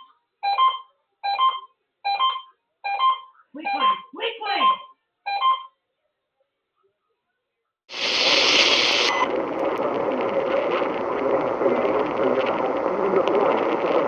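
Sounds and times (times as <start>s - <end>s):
radio static hiss: 7.9s - 14.0s.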